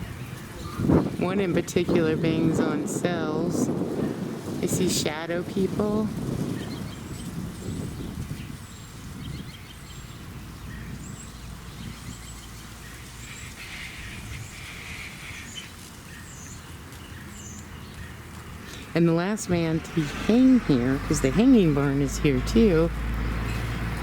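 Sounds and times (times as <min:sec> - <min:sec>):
small birds chirping: 0:00.0 - 0:01.9, 0:05.6 - 0:24.0
steady low rumble: 0:18.2 - 0:24.0.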